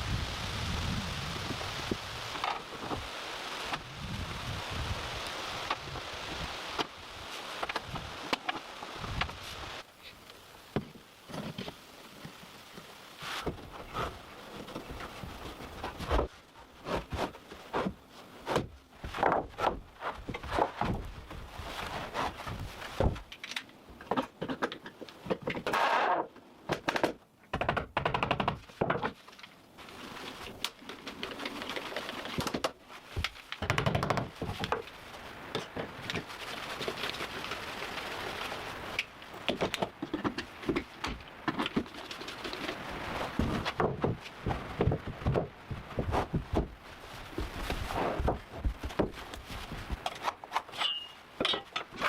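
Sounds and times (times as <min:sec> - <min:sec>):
irregular knocks and thuds: 0:15.8 - 0:21.5, 0:43.3 - 0:46.8, 0:47.4 - 0:50.1.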